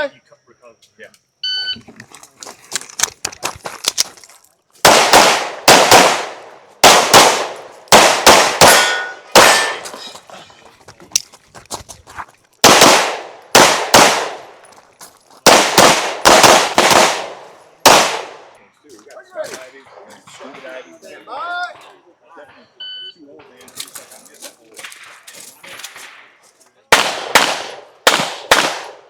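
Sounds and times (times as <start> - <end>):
pistol shots: 4.8 - 10.0, 12.6 - 14.6, 15.4 - 18.5, 26.9 - 29.0.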